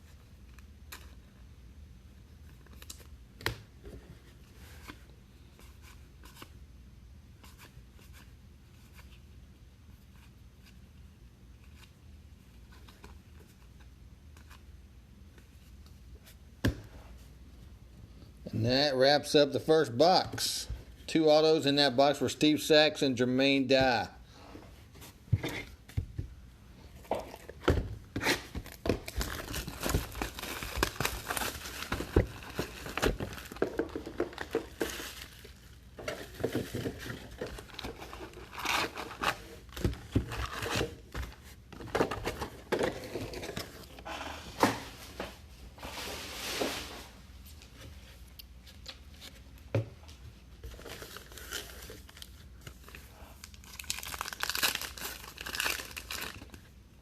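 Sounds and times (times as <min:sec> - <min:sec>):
packaging torn and crumpled: 0:28.2 - 0:35.7, 0:53.4 - 0:56.6.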